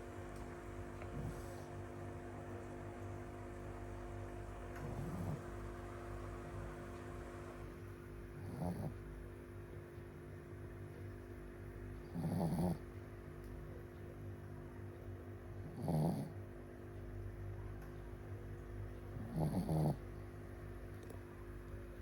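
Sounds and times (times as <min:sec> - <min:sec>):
dog snoring: 0:00.9 - 0:02.0, 0:04.2 - 0:05.9, 0:08.3 - 0:09.2, 0:12.0 - 0:12.9, 0:15.6 - 0:16.4, 0:19.2 - 0:20.1.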